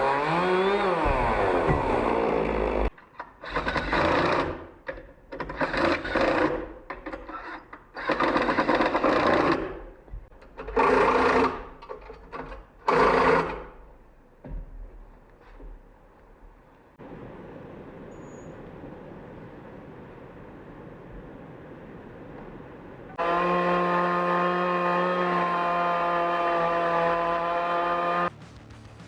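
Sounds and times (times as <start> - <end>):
chainsaw engine running: 0.0 - 2.9, 8.0 - 9.8, 10.7 - 11.8, 12.8 - 13.8, 23.2 - 29.0
bursts of rough noise: 0.0 - 4.8, 23.1 - 29.0.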